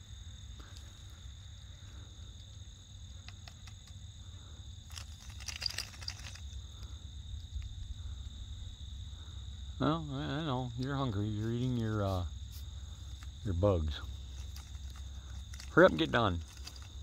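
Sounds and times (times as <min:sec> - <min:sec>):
crickets trilling: 0:00.0 - 0:17.0
clicks and rustling: 0:02.4 - 0:04.0, 0:04.8 - 0:07.7, 0:14.2 - 0:17.0.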